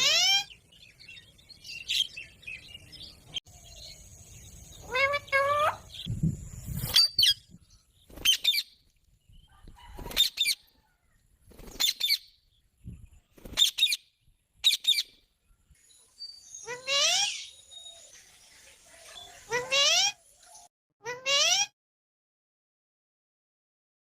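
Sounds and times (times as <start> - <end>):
parrot calling: 0.0 - 0.6, 4.8 - 6.1, 16.6 - 17.6, 19.2 - 20.2.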